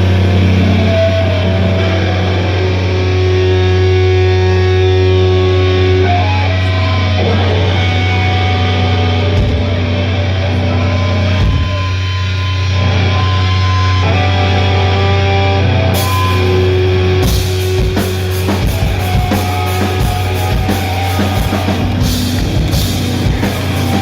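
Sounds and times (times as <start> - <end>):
heavy band playing distorted guitars: 0.0 - 24.0.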